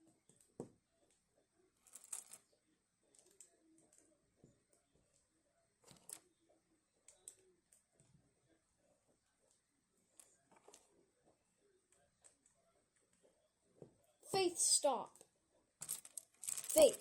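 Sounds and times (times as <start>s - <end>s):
plastic pieces rustling: 15.8s - 17.0s.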